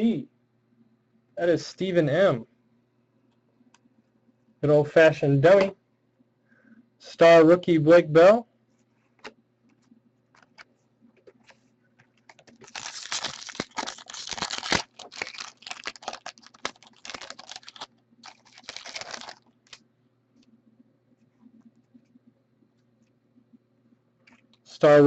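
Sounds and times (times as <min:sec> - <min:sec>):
foil wrapper tearing and crinkling: 0:12.3 - 0:19.8.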